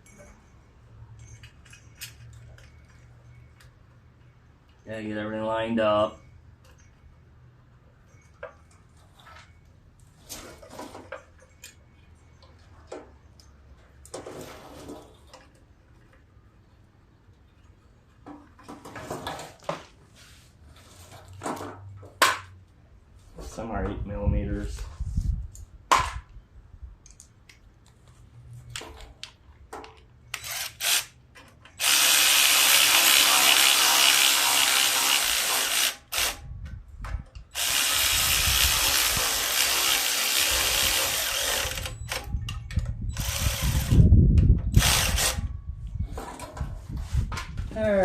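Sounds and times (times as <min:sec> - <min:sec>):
power drill running: 0:30.3 - 0:31.1, 0:31.8 - 0:36.4, 0:37.5 - 0:42.2, 0:43.2 - 0:44.0, 0:44.7 - 0:45.4.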